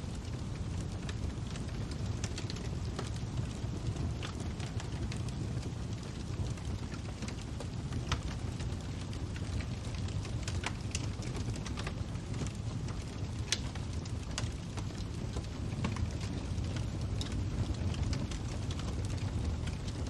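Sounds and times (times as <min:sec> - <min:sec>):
fire crackling with pops: 0:00.0 - 0:20.0.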